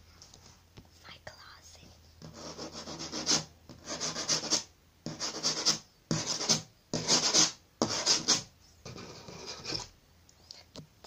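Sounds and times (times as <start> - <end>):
fingernails scratching hard surface: 2.2 - 9.9.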